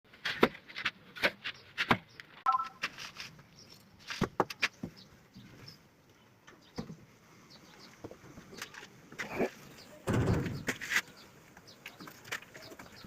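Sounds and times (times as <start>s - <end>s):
short beeping tone: 2.5s - 2.8s.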